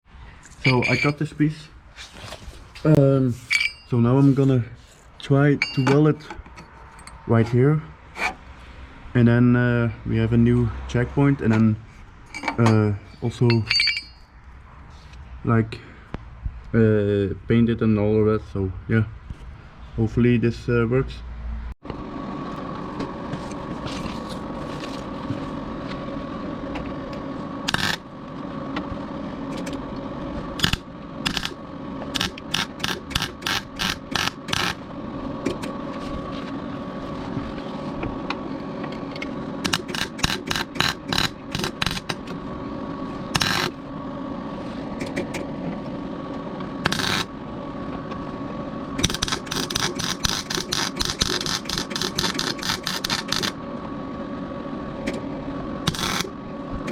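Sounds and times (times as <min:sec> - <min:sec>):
steady hum: 0:08.8 - 0:56.9
welding crackle: 0:27.7 - 0:28.2, 0:30.6 - 0:34.9, 0:39.6 - 0:42.3, 0:43.4 - 0:43.8, 0:46.8 - 0:47.3, 0:49.0 - 0:53.6, 0:55.9 - 0:56.4.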